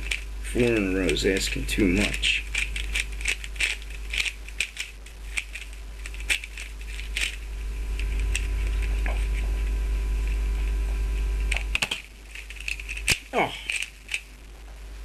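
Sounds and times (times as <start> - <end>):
puzzle cube layers clicking: 0.0 - 7.4, 11.5 - 14.3
steady low hum: 0.0 - 15.0.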